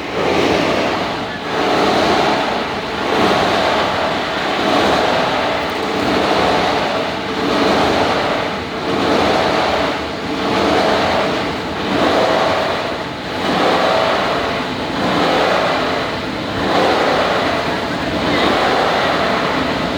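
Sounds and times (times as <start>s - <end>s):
plastic grinder churning: 1.3s - 11.3s.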